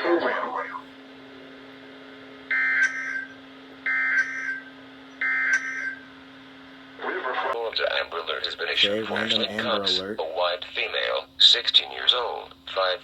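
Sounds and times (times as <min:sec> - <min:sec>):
steady low hum: 0:07.8 - 0:10.7.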